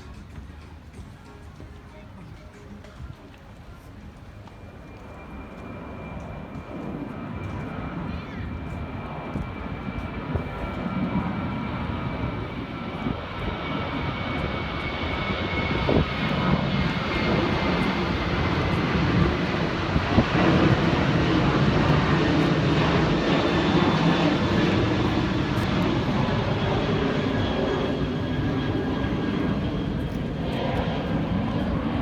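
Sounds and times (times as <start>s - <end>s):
airliner engines taking off: 0.0s - 32.0s.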